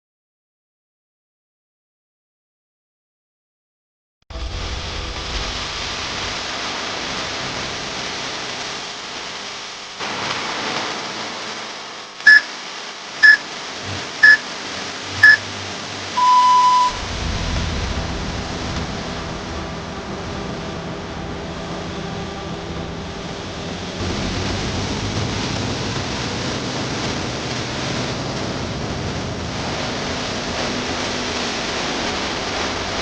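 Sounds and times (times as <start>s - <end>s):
electronic timer beeps: 12.3s - 12.5s, 13.2s - 13.4s, 14.2s - 14.5s, 15.2s - 15.5s, 16.2s - 17.0s.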